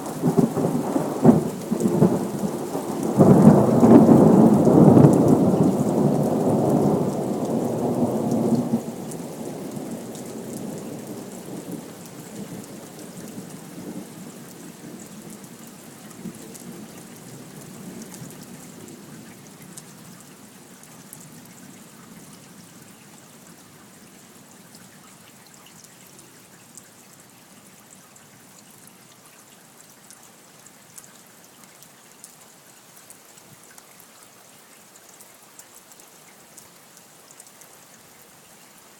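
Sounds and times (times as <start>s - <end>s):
steady rain pattering: 0.0s - 38.9s
thunder rolling and rumbling: 0.2s - 11.3s.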